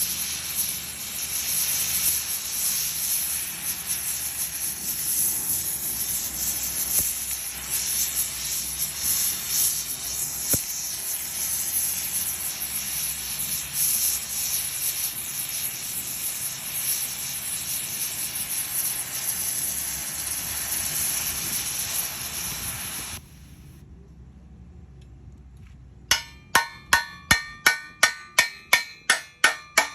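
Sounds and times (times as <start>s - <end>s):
welding crackling hiss: 0.0s - 23.8s, 26.1s - 29.9s
hammer striking metal: 26.1s - 29.9s.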